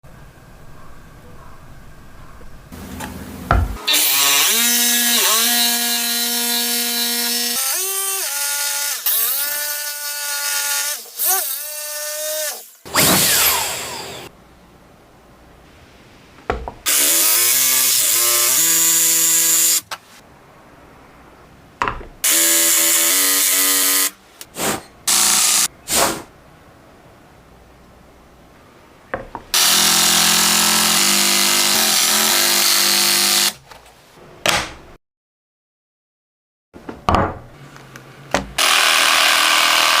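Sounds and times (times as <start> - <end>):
electric jigsaw cutting: 3.8 - 14.3, 16.9 - 19.8, 25.1 - 25.7, 29.6 - 33.6, 38.6 - 40.0.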